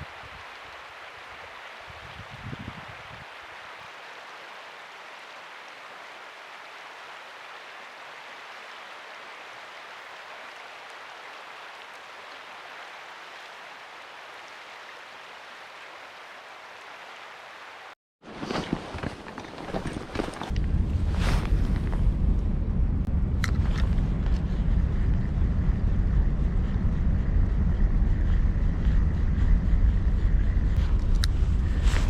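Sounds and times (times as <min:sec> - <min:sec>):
river water rushing: 0:00.0 - 0:02.1, 0:03.0 - 0:18.0.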